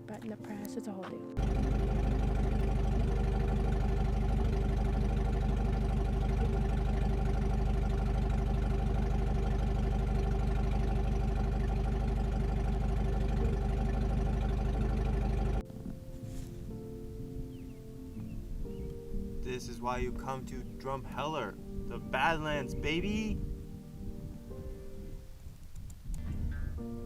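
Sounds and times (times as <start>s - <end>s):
vehicle engine droning: 1.4s - 15.6s.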